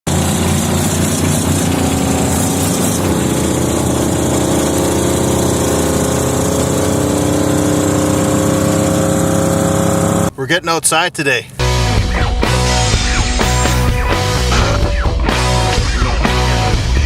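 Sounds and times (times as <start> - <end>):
wood chipper engine running: 0.1 - 10.4.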